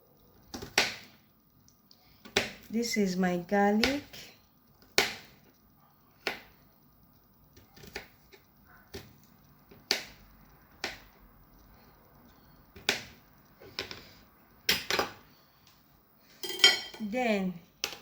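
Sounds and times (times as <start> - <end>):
knife chopping garlic: 9.8 - 11.2.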